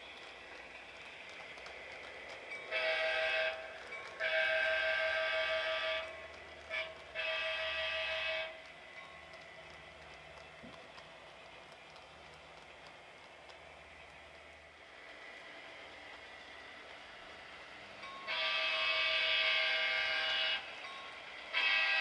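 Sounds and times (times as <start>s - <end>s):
model locomotive horn blasts: 2.7s - 8.7s, 18.2s - 20.8s, 21.5s - 22.0s.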